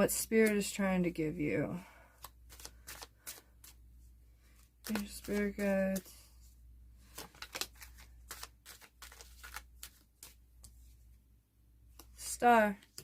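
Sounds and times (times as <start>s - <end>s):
cards being shuffled: 2.2s - 3.8s, 4.5s - 6.2s, 7.0s - 10.9s.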